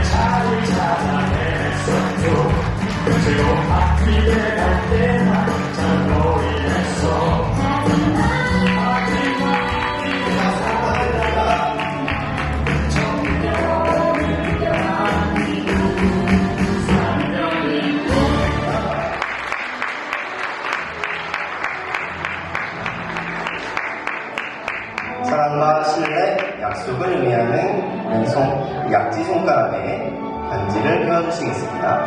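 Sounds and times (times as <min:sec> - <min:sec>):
music with steady beat: 0:00.0 - 0:19.0
bass line: 0:00.0 - 0:19.2.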